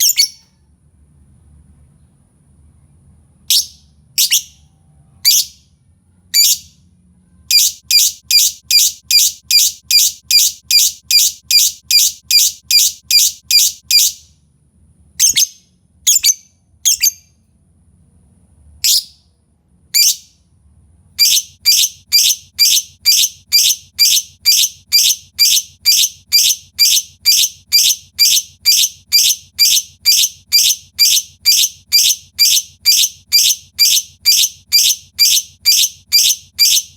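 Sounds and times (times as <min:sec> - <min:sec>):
lovebird shrill calls: 0:06.4 - 0:06.6, 0:07.5 - 0:14.2, 0:21.2 - 0:36.9.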